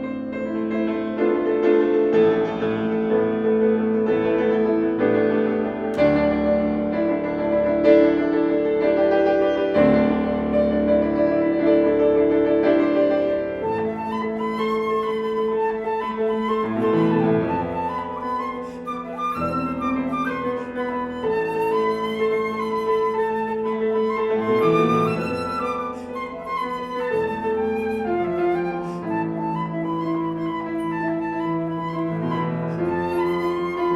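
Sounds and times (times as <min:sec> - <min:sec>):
flute melody: 0:00.0 - 0:33.9
piano chords: 0:00.0 - 0:33.9.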